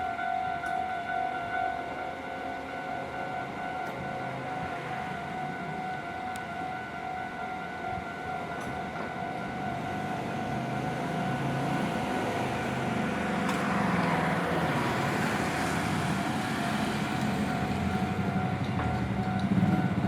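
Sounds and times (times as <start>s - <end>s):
level crossing alarm ringing: 0.0s - 20.0s
train rumbling past: 9.1s - 20.0s.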